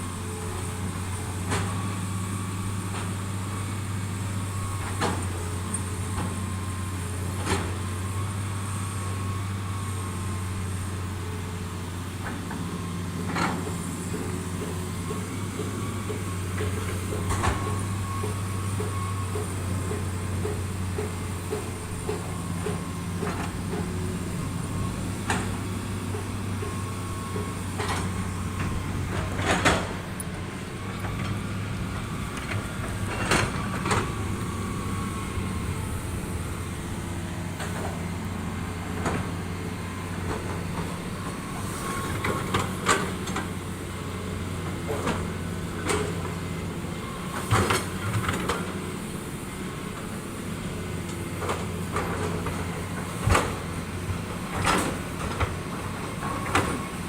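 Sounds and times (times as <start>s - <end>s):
heavy diesel machinery running: 0.0s - 57.0s
metallic clanks from tracks: 12.2s - 43.7s, 51.1s - 57.0s.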